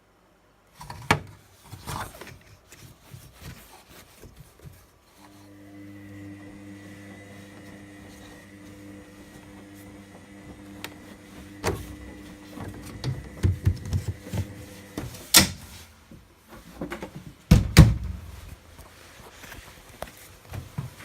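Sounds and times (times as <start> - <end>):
laundry appliance humming: 5.2 - 15.9.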